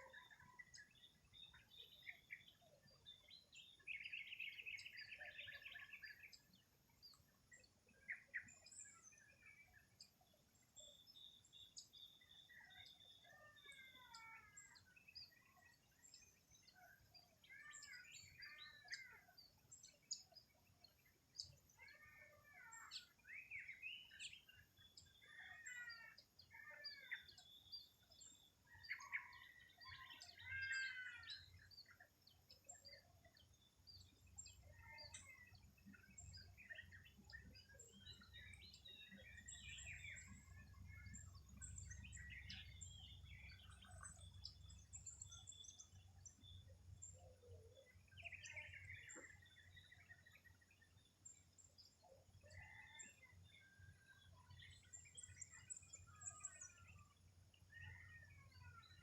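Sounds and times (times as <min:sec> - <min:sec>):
birds chirping and singing: 0:00.0 - 0:59.0.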